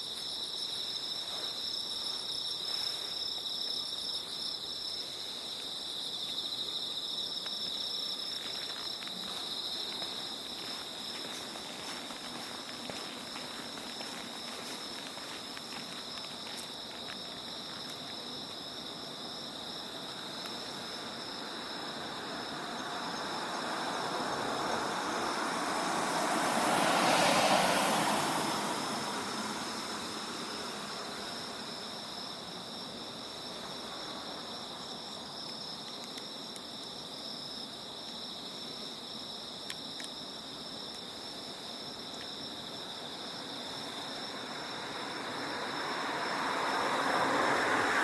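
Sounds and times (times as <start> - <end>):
insects trilling: 0.0 - 48.0
car passing: 9.2 - 34.8, 42.6 - 48.0
vehicle approaching: 21.4 - 32.0, 43.8 - 48.0.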